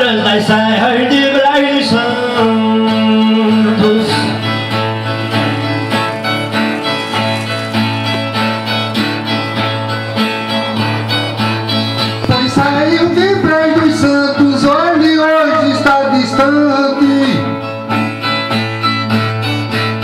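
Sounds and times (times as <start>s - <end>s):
man singing: 0.0s - 4.8s, 12.2s - 17.9s
plucked viola phrases: 2.1s - 15.5s
low string drone: 3.2s - 11.6s.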